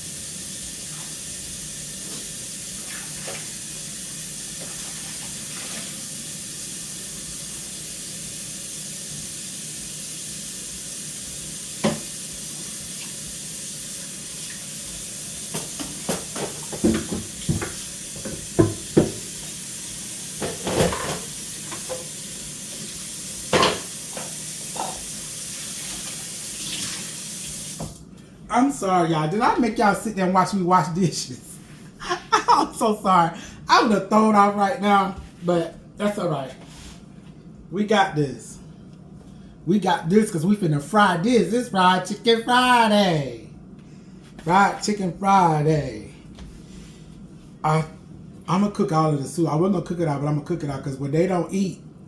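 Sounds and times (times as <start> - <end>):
tap running into sink: 11.8 - 13.2, 15.4 - 19.5, 20.4 - 25.2, 27.7 - 28.0
dishes clinking and clattering: 15.5 - 19.4, 20.4 - 22.2, 23.5 - 25.2.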